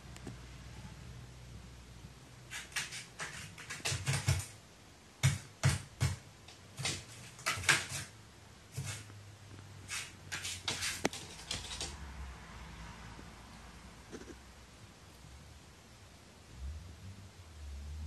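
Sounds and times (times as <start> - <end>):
crow pecking and knocking: 2.5 - 4.6, 5.2 - 6.2, 6.8 - 8.1, 10.0 - 12.0.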